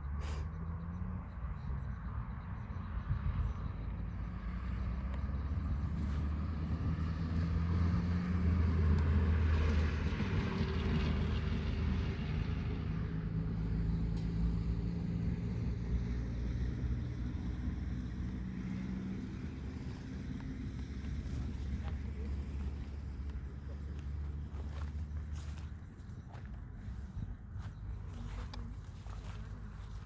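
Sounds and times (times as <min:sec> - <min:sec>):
engine humming: 0:03.4 - 0:30.0.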